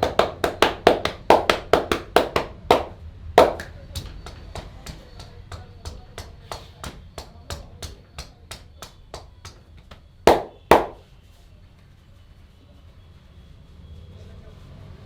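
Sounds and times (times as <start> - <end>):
hands slapping and tapping head: 0.0 - 11.0.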